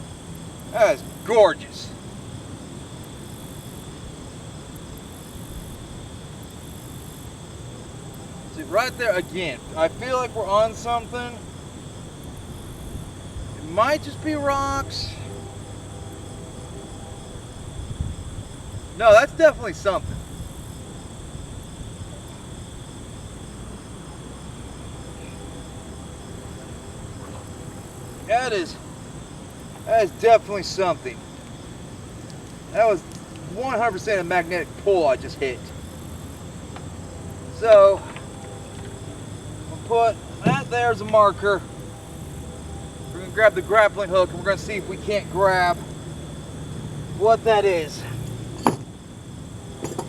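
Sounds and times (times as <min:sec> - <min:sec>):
crickets trilling: 0:00.0 - 0:50.0
night insects chirring: 0:00.0 - 0:50.0
low steady rumble: 0:07.4 - 0:32.8.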